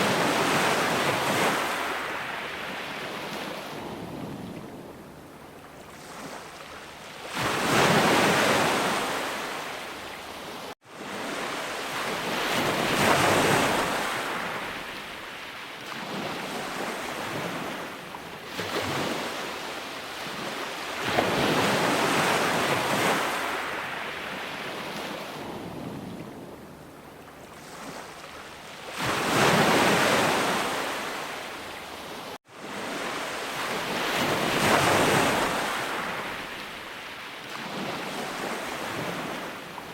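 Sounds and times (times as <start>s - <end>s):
sea waves breaking: 0.0s - 39.9s.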